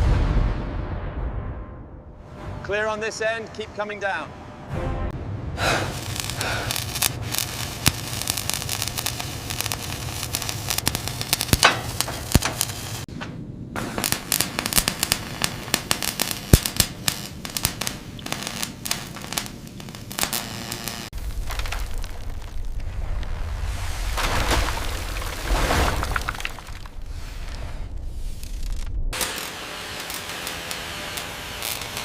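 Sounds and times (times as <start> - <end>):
low hum: 0.0 - 30.8
dense crackling clicks: 5.6 - 32.0.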